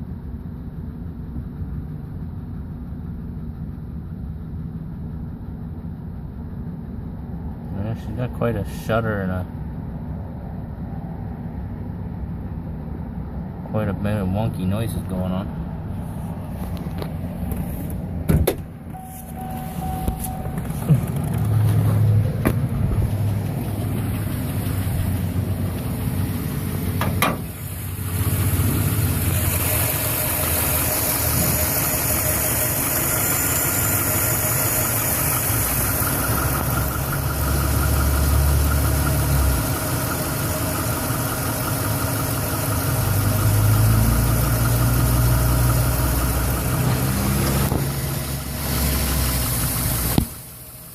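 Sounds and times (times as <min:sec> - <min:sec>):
truck engine idling roughly: 0:18.7 - 0:50.9.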